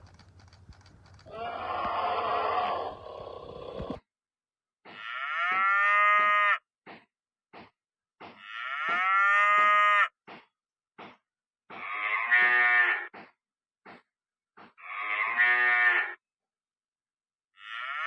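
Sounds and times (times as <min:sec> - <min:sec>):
cattle mooing: 0:01.3 - 0:04.0.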